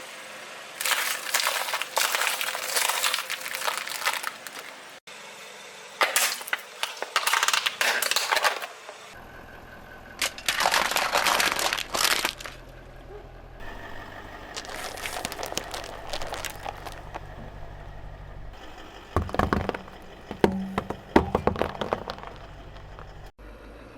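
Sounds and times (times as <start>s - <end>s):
objects crushed under car tyres: 0.8s - 5.0s, 6.0s - 8.8s, 10.2s - 12.6s, 13.6s - 17.8s, 18.6s - 23.3s
car engine hum: 9.1s - 23.9s.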